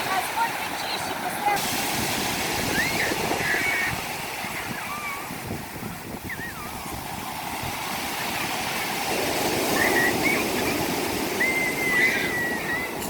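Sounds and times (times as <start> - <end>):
sea waves washing in: 0.0 - 13.0
birds giving wavering calls: 6.2 - 7.0, 9.6 - 13.0.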